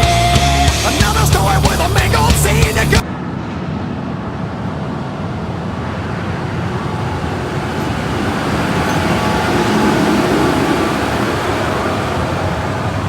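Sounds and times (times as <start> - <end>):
music: 0.0 - 3.0
bulldozer engine rumble: 0.0 - 13.0.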